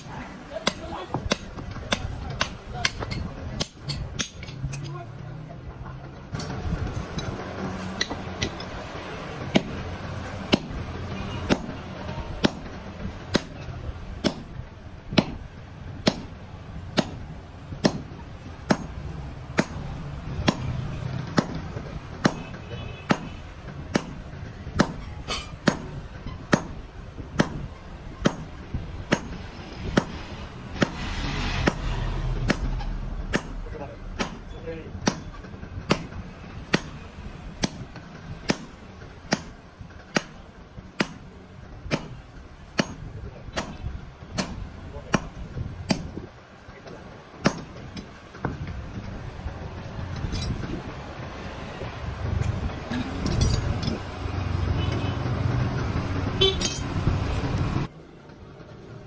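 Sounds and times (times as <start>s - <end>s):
hammer striking steel on anvil: 0.0s - 4.9s, 7.9s - 8.7s, 10.5s - 15.4s, 16.0s - 16.4s, 17.0s - 46.3s, 47.4s - 48.6s.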